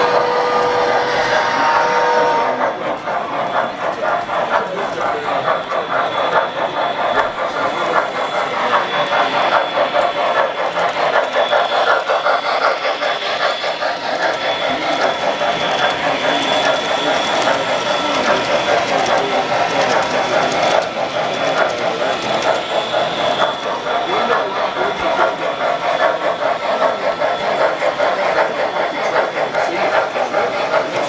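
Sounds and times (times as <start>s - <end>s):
held horn-like tone: 0.0s - 2.6s
model train clicking on track: 0.0s - 31.0s.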